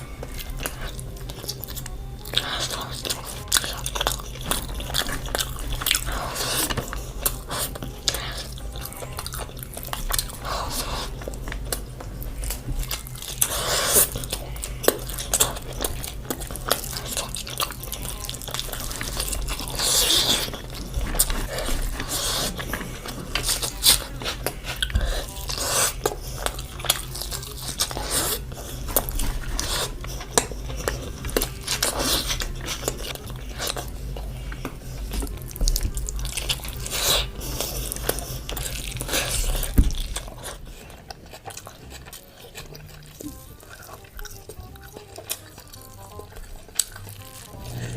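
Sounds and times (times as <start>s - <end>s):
person chewing and smacking: 0.0s - 47.9s
steady low hum: 0.0s - 47.9s.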